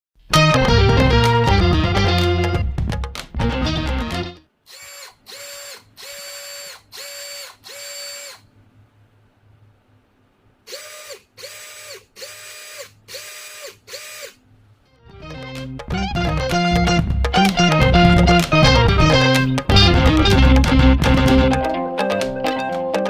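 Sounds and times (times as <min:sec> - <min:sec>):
background music: 0:00.3 - 0:04.4, 0:15.0 - 0:23.0
impact wrench whining: 0:04.7 - 0:08.5, 0:10.7 - 0:14.4.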